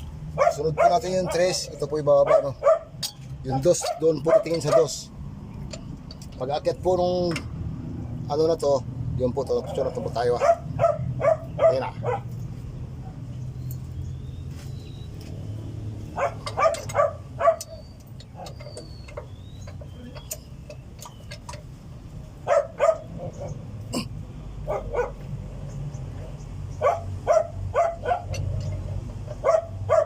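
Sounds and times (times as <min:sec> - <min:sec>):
dog barking: 0:00.4 - 0:04.9, 0:09.6 - 0:12.3, 0:16.2 - 0:17.8, 0:22.4 - 0:23.6, 0:24.6 - 0:25.2, 0:26.8 - 0:28.4, 0:29.4 - 0:30.0.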